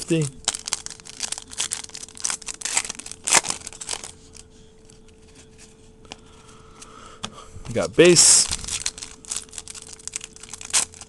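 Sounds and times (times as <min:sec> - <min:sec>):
foil wrapper crinkling and tearing: 0:00.0 - 0:05.2, 0:08.0 - 0:11.0
faint steady hum: 0:00.0 - 0:11.0.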